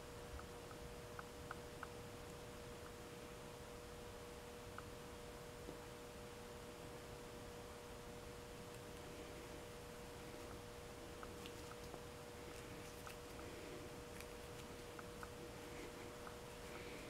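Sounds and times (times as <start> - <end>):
faint electrical hum: 0.0 - 17.0.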